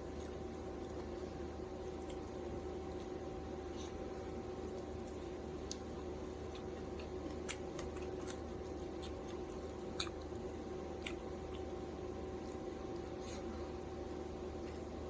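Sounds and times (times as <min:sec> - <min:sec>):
steady low hum: 0:00.0 - 0:15.0
wet chewing smacks: 0:01.9 - 0:11.8.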